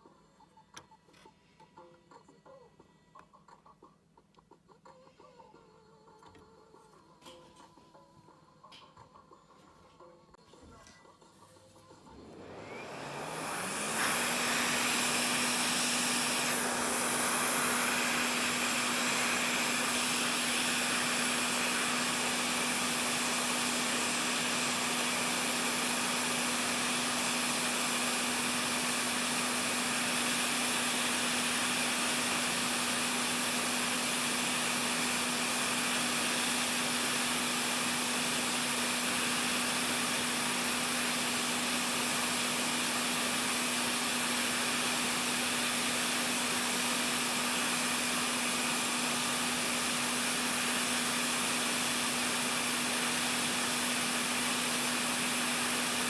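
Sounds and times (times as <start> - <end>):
electric blower running: 12.0 - 56.0.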